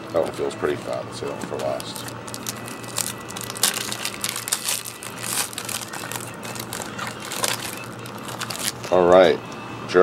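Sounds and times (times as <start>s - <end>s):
card pack wrapper crinkling: 1.2s - 9.0s.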